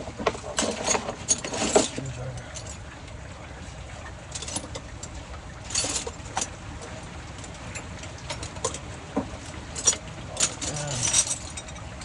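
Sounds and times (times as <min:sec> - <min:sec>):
hand tools clinking on metal: 0:00.5 - 0:02.8, 0:09.8 - 0:12.0.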